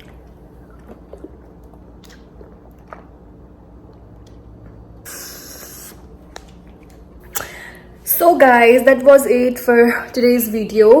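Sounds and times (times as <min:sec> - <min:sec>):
person chewing noodles: 0:00.0 - 0:07.2
short hiss: 0:05.1 - 0:06.0.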